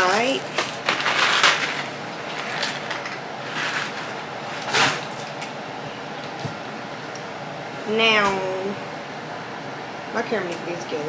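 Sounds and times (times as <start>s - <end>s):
kitchen handling noises: 0.0s - 5.6s.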